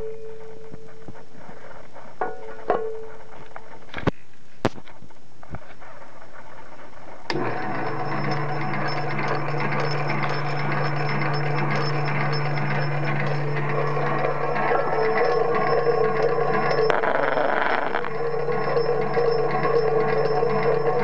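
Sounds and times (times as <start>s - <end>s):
electric motor humming and whining: 7.3s - 21.0s.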